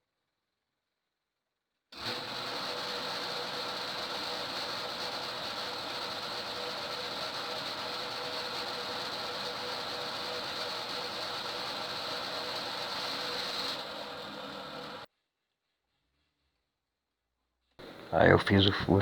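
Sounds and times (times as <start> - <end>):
drill bit boring into wood: 2.0 - 15.1
lathe high whine: 2.0 - 15.1.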